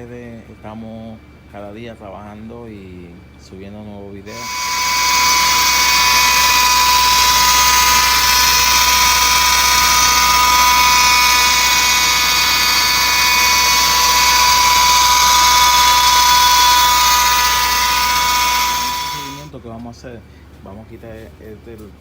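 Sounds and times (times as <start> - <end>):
high-pitched pulley whine: 4.3 - 19.5.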